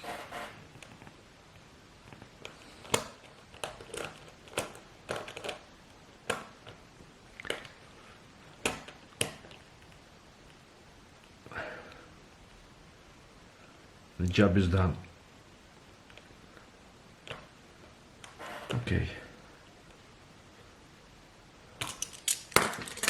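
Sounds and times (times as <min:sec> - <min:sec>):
metal clicks and scrapes: 0:21.8 - 0:23.0.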